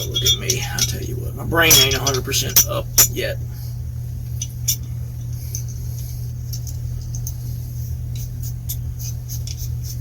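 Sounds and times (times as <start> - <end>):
metal parts clicking and tapping: 0.0 - 3.2, 4.4 - 5.8, 6.4 - 7.4
steady low hum: 0.0 - 10.0.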